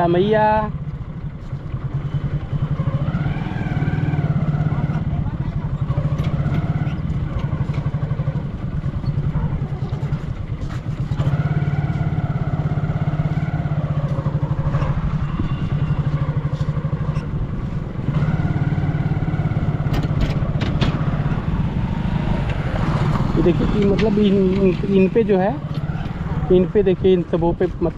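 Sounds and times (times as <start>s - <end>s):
motorcycle engine running: 0.0s - 27.9s
higher-pitched engine tones: 11.1s - 27.8s.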